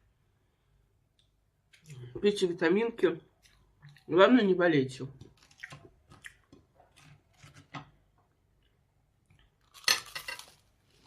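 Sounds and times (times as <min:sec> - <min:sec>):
soft chewing: 0:03.3 - 0:04.1, 0:05.2 - 0:07.6.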